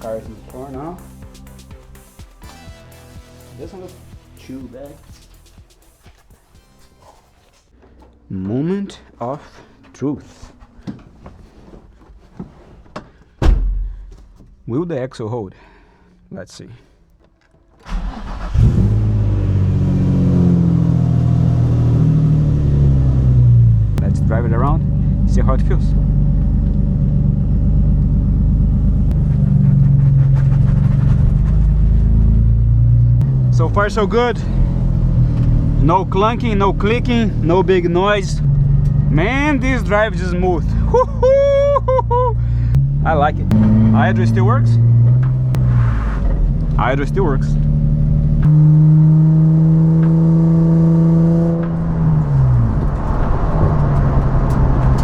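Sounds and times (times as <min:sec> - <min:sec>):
car engine accelerating: 0:17.8 - 0:55.0.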